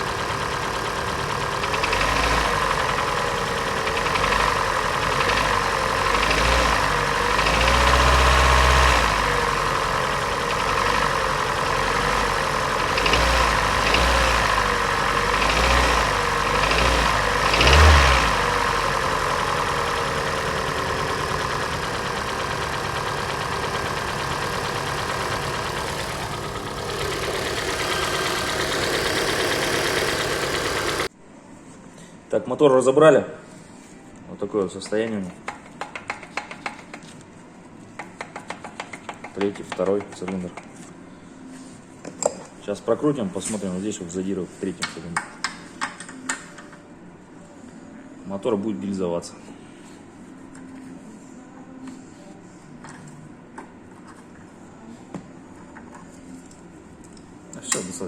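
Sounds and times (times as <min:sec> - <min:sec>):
car engine idling and revving: 0:00.0 - 0:31.1
engine piston knock: 0:00.0 - 0:31.1.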